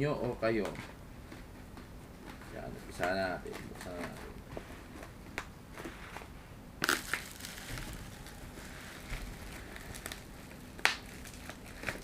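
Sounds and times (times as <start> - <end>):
plastic packaging crinkling: 6.8 - 12.0.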